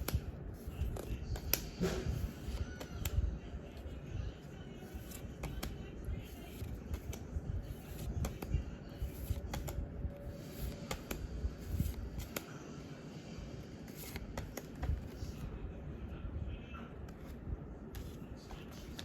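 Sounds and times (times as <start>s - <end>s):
trading cards sliding and flicking: 0.0s - 3.2s, 4.8s - 12.6s, 13.8s - 15.4s, 17.1s - 19.0s.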